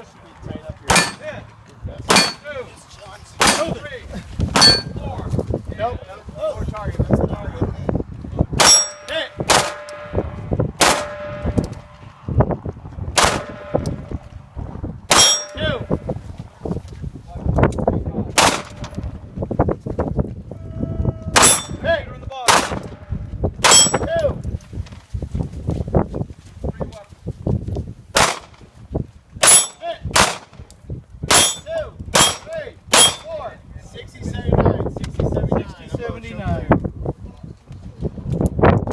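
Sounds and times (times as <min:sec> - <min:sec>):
pistol shots: 0:00.9 - 0:01.2, 0:02.1 - 0:02.4, 0:03.4 - 0:03.8, 0:08.6 - 0:10.1, 0:10.8 - 0:11.5, 0:13.2 - 0:13.8, 0:18.4 - 0:18.9, 0:21.4 - 0:21.8, 0:22.5 - 0:22.9, 0:28.2 - 0:28.6, 0:29.4 - 0:30.6, 0:32.2 - 0:33.2.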